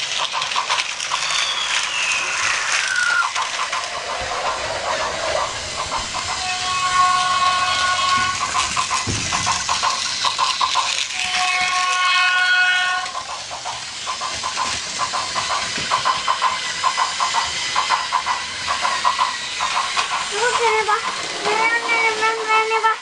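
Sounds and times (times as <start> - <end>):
toy train whistle tone: 1.0 - 3.4, 6.4 - 8.6, 11.0 - 13.1
rapid even clicking: 8.2 - 11.2, 13.1 - 21.4.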